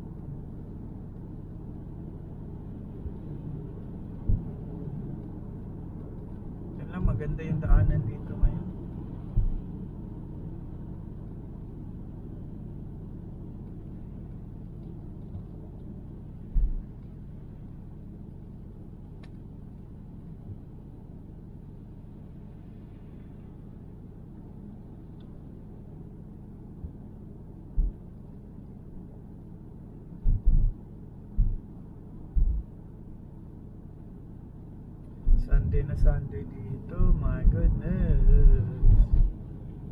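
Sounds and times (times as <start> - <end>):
car driving rumble inside cabin: 0.0 - 39.9
dull thumps: 31.4 - 31.6, 32.4 - 32.6.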